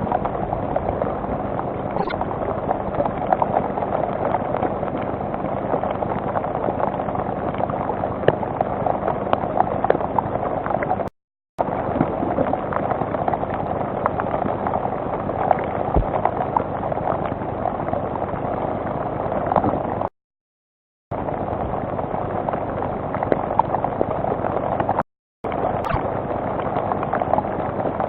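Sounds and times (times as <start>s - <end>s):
rain drops ticking: 0.0s - 20.1s.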